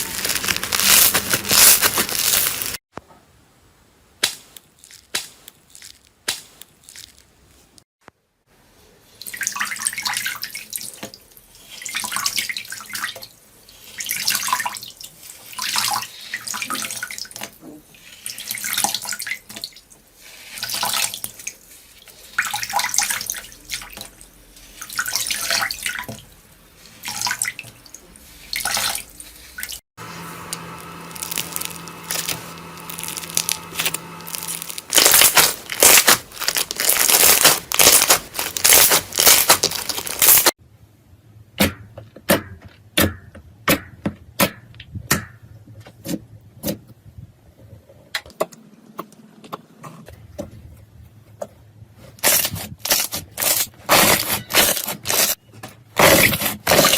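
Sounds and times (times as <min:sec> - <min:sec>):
crisp slime crackling: 0:00.0 - 0:02.8, 0:30.4 - 0:40.5
slime squelching and popping: 0:30.9 - 0:40.5.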